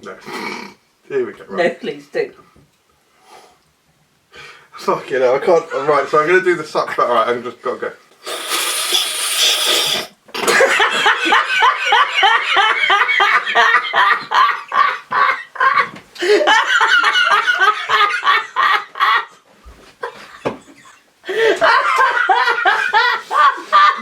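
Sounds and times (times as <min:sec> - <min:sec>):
slurping from soda can: 0:08.2 - 0:10.2
hearty laughter: 0:10.4 - 0:19.4, 0:20.0 - 0:24.0.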